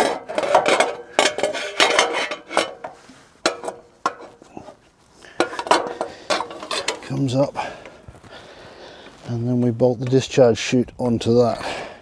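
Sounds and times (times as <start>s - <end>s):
metal parts clanking together: 5.4s - 7.1s.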